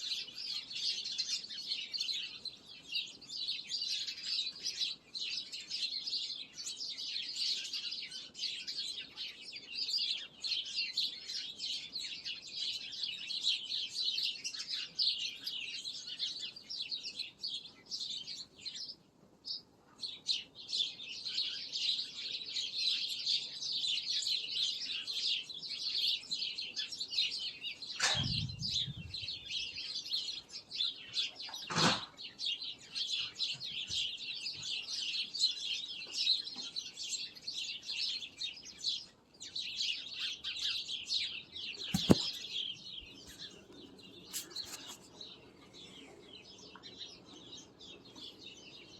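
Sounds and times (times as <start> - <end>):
small birds chirping: 0.0 - 48.9
short knocks: 41.9 - 42.4.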